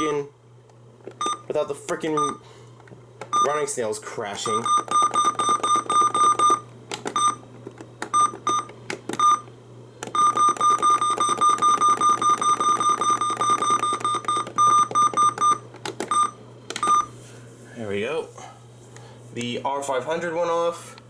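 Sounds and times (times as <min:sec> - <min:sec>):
shrill pulsed alarm beeps: 0:04.4 - 0:06.6, 0:07.2 - 0:07.4, 0:08.2 - 0:09.4, 0:10.2 - 0:17.1.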